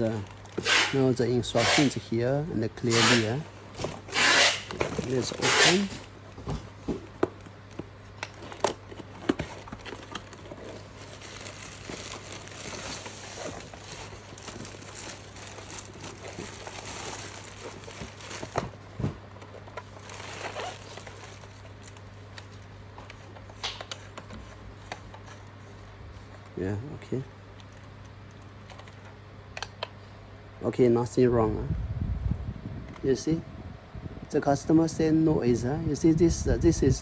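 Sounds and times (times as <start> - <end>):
plastic packaging crinkling: 0.0 - 2.1, 2.8 - 6.1, 7.0 - 25.4.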